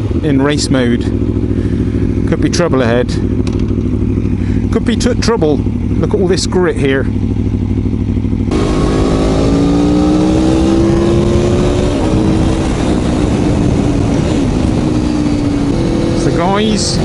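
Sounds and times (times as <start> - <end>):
motorcycle engine under throttle: 0.0 - 17.0
wind noise: 8.5 - 17.0.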